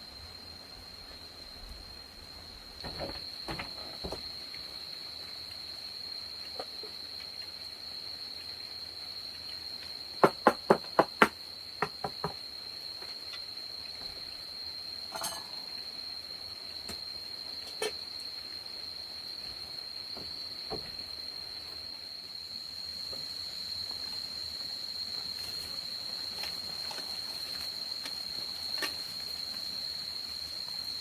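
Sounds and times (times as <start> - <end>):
sharp knocks: 10.2 - 12.4.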